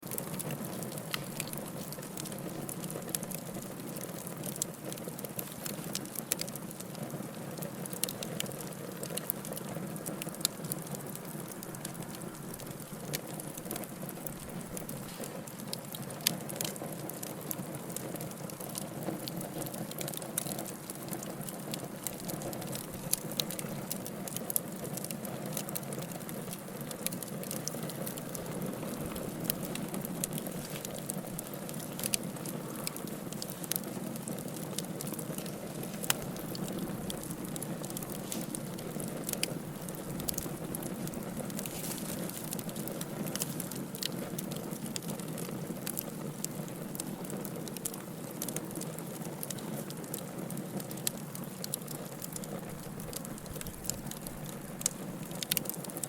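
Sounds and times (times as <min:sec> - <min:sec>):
burning wood popping: 0:00.0 - 0:56.0
campfire crackling: 0:00.0 - 0:56.0.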